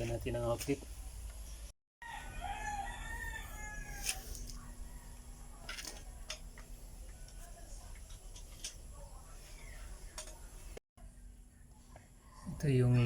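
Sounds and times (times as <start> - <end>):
rooster crowing: 2.0 - 5.4.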